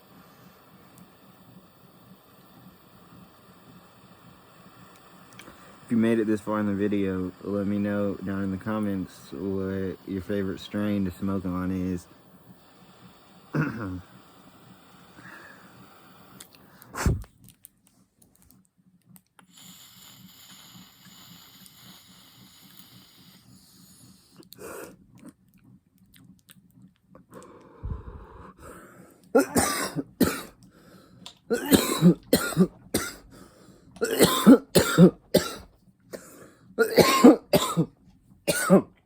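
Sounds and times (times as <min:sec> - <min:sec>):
faint steady hiss: 0:00.0 - 0:39.0
man coughing harshly: 0:13.6 - 0:14.0, 0:29.4 - 0:30.5, 0:31.5 - 0:33.2, 0:34.0 - 0:35.7, 0:36.8 - 0:37.9, 0:38.5 - 0:38.9.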